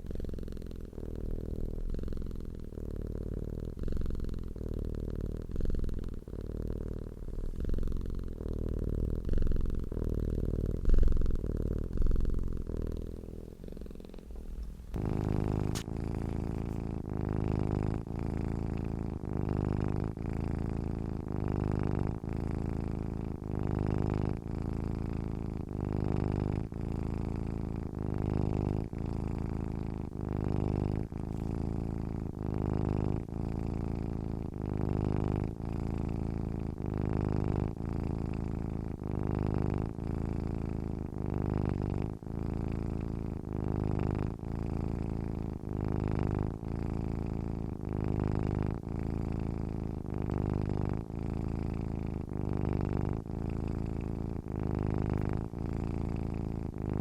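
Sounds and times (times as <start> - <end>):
cat purring: 0.0 - 57.0.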